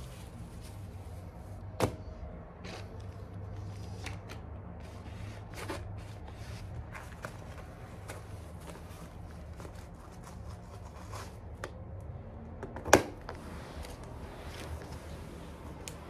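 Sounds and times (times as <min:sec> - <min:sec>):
household handling noises: 0:00.0 - 0:11.9.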